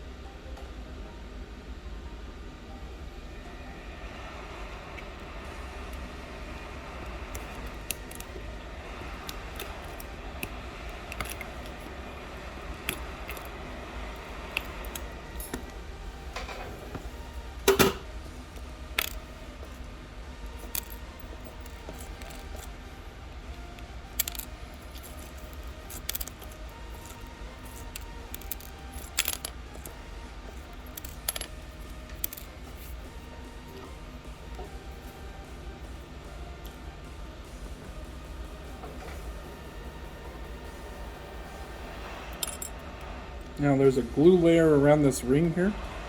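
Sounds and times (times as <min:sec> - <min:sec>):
steady low hum: 0:00.0 - 0:46.0
glass pieces ticking: 0:24.1 - 0:33.0.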